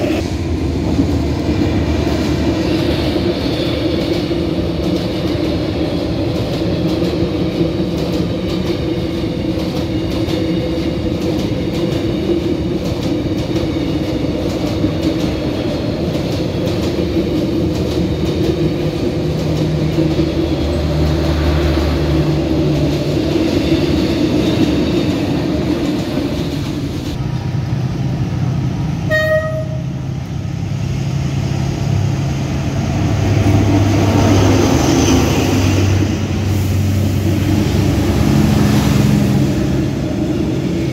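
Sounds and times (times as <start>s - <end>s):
train rumble and drone: 0.0s - 40.9s
train wheels clicking over rails: 0.0s - 40.9s
train horn toot: 29.1s - 30.0s.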